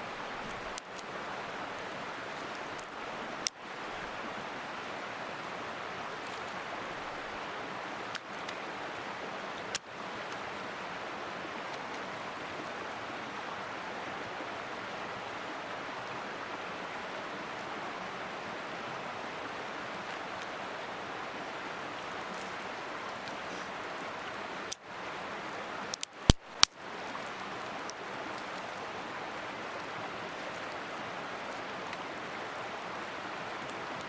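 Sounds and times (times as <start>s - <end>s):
mountain stream flowing: 0.0s - 34.0s
sharp clicks: 25.9s - 26.7s.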